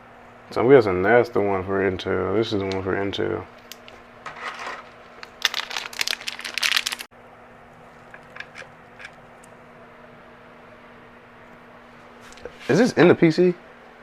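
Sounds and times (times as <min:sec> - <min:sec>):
low steady hum: 0:00.0 - 0:14.0
packaging crinkling and rustling: 0:03.6 - 0:07.1.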